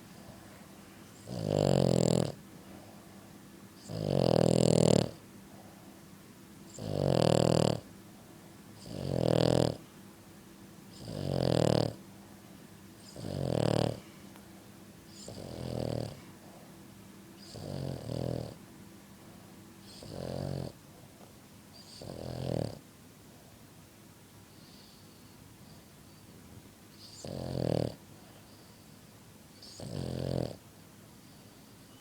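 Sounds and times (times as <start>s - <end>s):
dog snoring: 1.2s - 2.9s, 3.8s - 5.7s, 6.7s - 7.9s, 8.8s - 9.9s, 10.9s - 12.0s, 13.0s - 14.1s, 15.1s - 16.7s, 17.4s - 18.6s, 19.8s - 20.8s, 21.7s - 22.8s, 26.9s - 28.8s, 29.6s - 30.6s.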